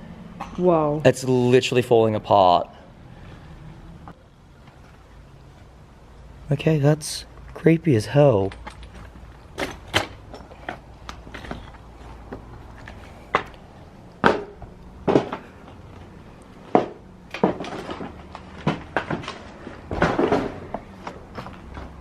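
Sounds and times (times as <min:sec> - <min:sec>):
debris clattering: 0:16.6 - 0:22.0.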